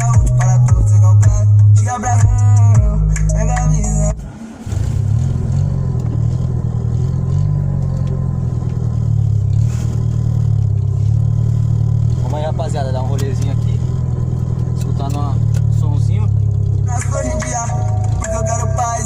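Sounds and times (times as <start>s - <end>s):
music with singing from car stereo: 0.0s - 4.5s, 16.8s - 19.0s
car engine while driving: 0.0s - 19.0s
road noise: 0.0s - 19.0s.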